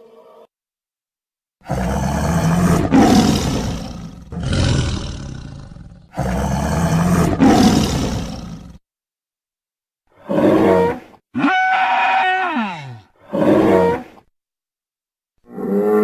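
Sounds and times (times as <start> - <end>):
dinosaur roars: 1.6 - 8.8.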